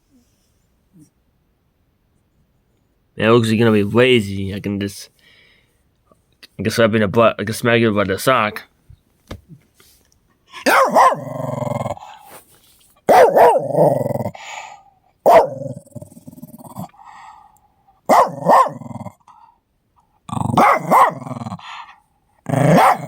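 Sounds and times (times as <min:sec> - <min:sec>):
dog bark-growling: 0:10.6 - 0:12.2, 0:13.1 - 0:14.4, 0:15.2 - 0:16.9, 0:18.1 - 0:19.2, 0:20.3 - 0:21.7, 0:22.4 - 0:23.0.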